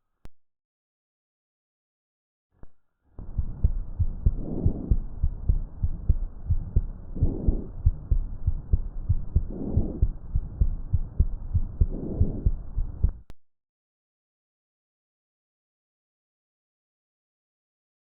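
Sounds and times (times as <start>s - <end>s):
soft breath sounds: 3.2s - 13.2s
heartbeat thumps: 3.2s - 13.3s.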